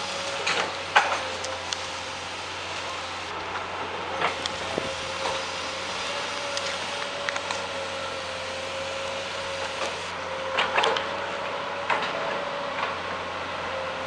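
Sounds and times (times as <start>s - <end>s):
engine running with thin whine: 0.0s - 14.0s.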